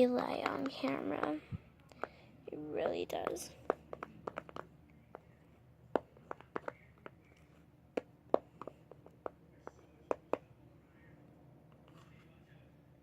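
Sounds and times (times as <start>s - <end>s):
utensil tapping plastic container: 3.1s - 5.3s.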